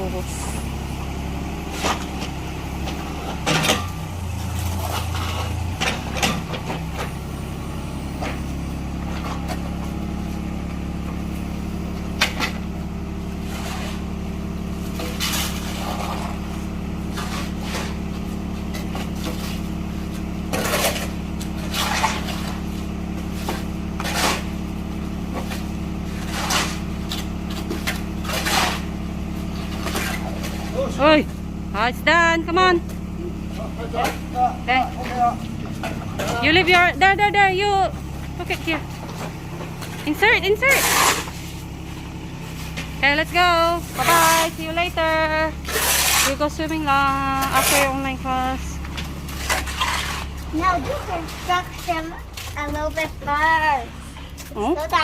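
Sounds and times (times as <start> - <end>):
concrete mixer engine running: 0.0 - 55.0
sharp clanks and knocks: 1.8 - 4.1, 4.7 - 7.2.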